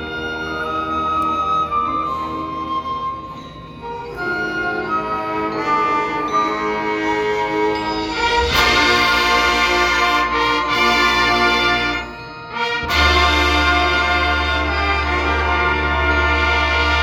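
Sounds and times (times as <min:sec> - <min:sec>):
marching band playing: 0:04.1 - 0:17.0.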